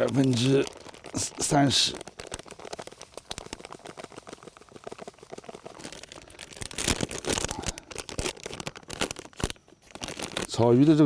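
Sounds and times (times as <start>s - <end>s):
groundbait rustling and crackling: 0.0s - 11.0s.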